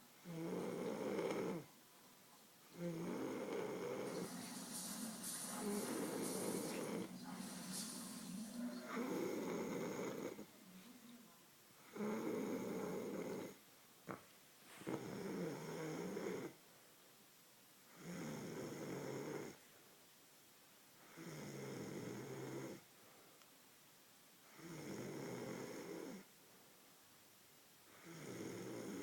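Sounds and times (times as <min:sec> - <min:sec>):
quiet breaths: 0:00.0 - 0:23.8, 0:24.4 - 0:29.0
man snoring: 0:00.2 - 0:01.7, 0:02.8 - 0:04.3, 0:05.6 - 0:07.1, 0:08.8 - 0:10.5, 0:11.8 - 0:13.6, 0:14.9 - 0:16.6, 0:17.9 - 0:19.6, 0:21.0 - 0:22.8, 0:24.5 - 0:26.2, 0:27.9 - 0:29.0.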